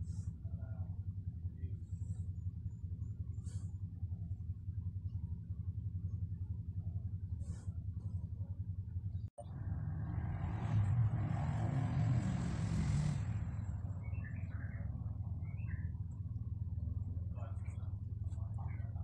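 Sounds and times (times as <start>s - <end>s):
steady low hum: 0.0s - 19.0s
vehicle passing by: 9.4s - 15.5s
bird chirps: 13.6s - 16.2s.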